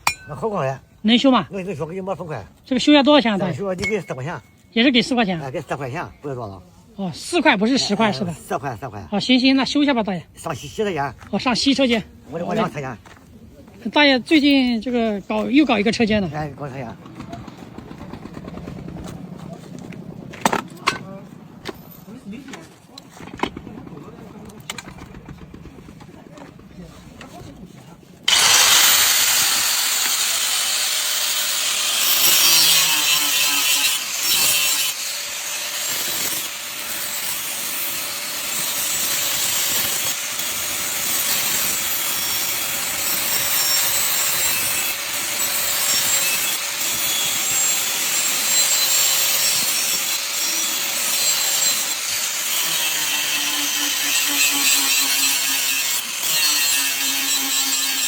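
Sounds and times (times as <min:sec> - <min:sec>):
grinder grinding steel blade: 0:28.3 - 0:58.0.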